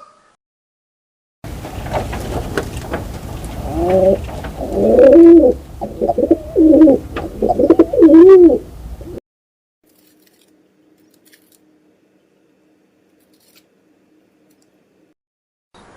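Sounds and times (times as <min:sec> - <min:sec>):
steady low rumble: 0:01.5 - 0:09.2
bird calling in wavering phrases: 0:03.6 - 0:09.2.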